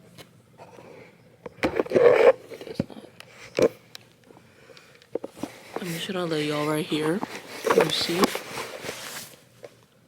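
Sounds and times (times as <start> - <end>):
scraping rustle: 5.3 - 9.5.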